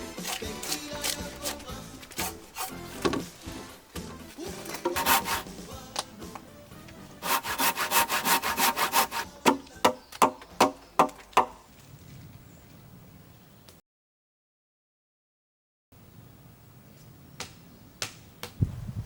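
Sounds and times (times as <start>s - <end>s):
hand saw cutting wood: 0.0s - 3.2s, 4.6s - 5.6s, 7.2s - 9.8s.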